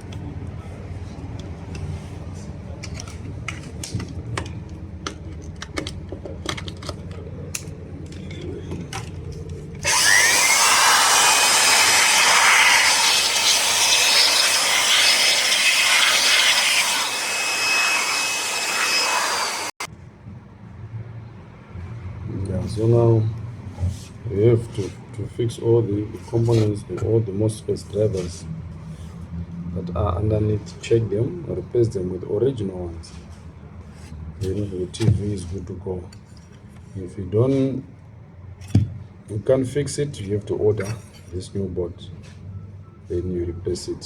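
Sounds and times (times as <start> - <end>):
electric air blower: 9.8 - 19.9.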